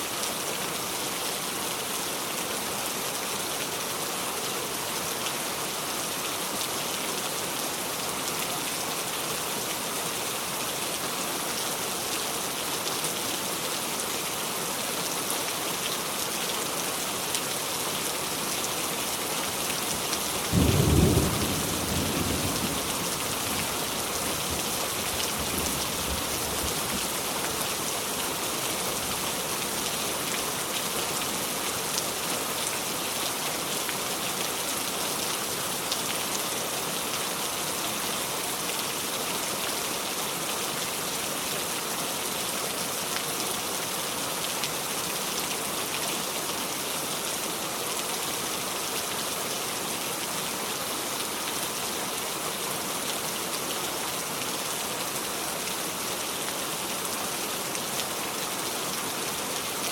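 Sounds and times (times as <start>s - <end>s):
heavy rain hissing: 20.2s - 30.2s.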